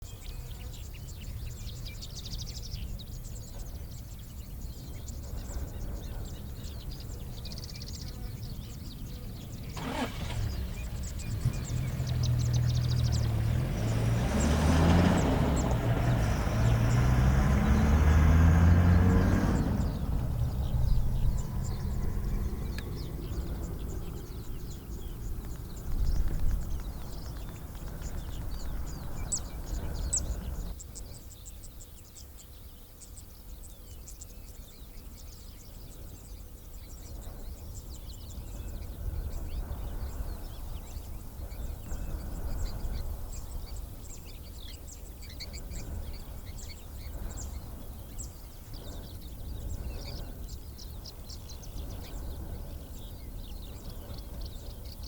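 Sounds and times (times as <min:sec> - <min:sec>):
birds chirping: 0:00.0 - 0:55.0
vehicle engine running: 0:09.0 - 0:30.8.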